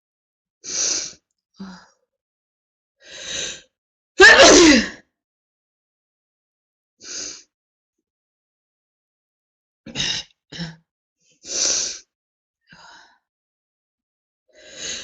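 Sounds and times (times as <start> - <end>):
woman sneezing: 4.2 - 5.0.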